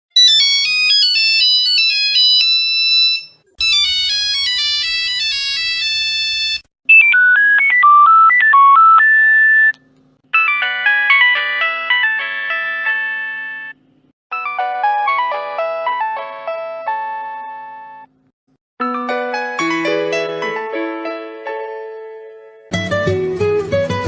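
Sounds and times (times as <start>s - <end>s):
electronic phone ringtone melody: 0.2s - 9.7s, 10.3s - 18.1s.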